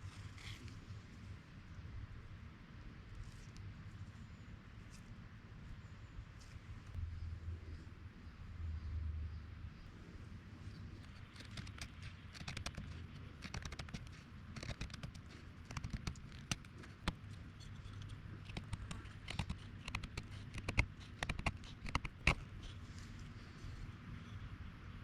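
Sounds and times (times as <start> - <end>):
low steady rumble: 0.0 - 25.0
small clicks and light knocks: 11.0 - 23.3.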